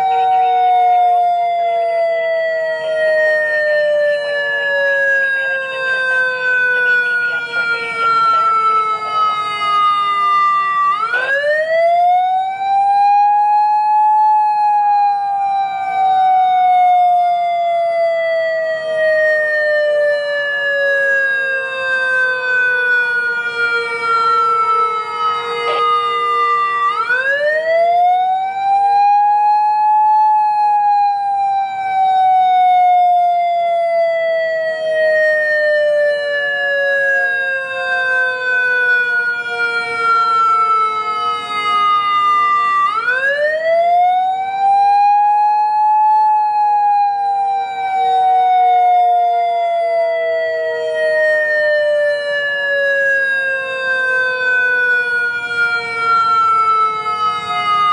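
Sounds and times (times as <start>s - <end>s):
electronic siren wailing: 0.0s - 57.9s.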